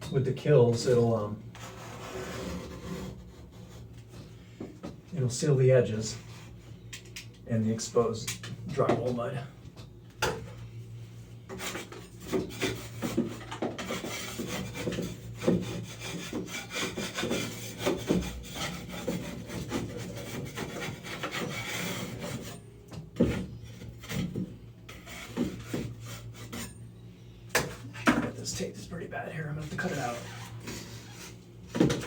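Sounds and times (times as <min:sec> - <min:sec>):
metal blade scraping ceiling: 0:29.6 - 0:31.4.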